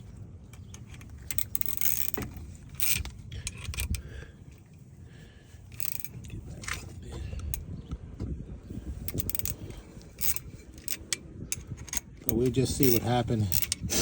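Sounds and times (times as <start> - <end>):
metallic clinks and scrapes: 0.0 - 4.0, 5.7 - 7.0, 9.0 - 14.0.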